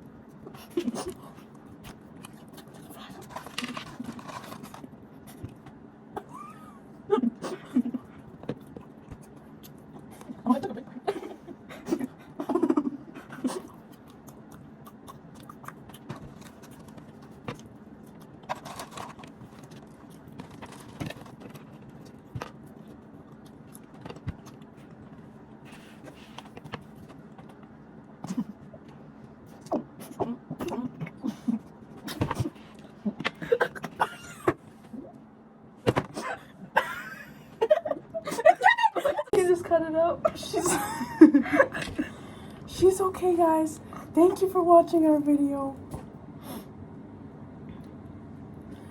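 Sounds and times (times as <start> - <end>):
faint steady hum: 0.0 - 48.9
mouth clicks and smacks: 13.6 - 16.3.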